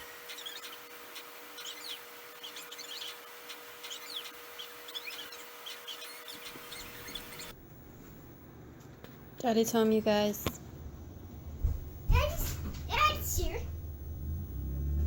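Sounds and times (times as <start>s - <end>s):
small birds chirping: 0.0s - 7.5s
faint steady hum: 0.0s - 15.0s.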